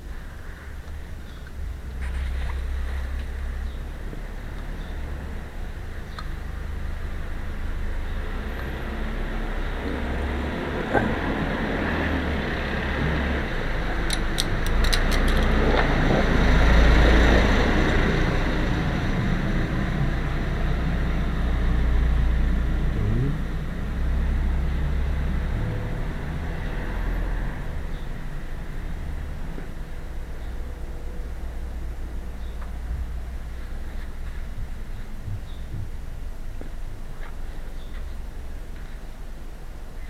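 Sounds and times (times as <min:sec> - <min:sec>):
motor vehicle humming: 0:00.0 - 0:40.0
sharp clicks: 0:14.0 - 0:15.6.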